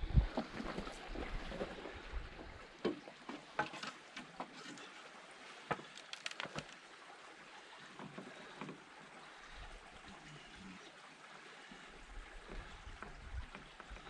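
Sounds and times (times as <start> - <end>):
wind rumble on microphone: 0.0 - 2.6, 12.2 - 13.7.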